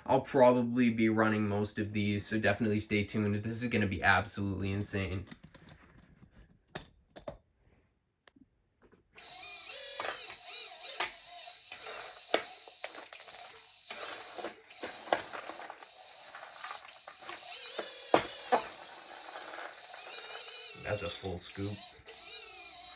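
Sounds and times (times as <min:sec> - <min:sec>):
hydraulic pump whining: 0:09.2 - 0:22.9.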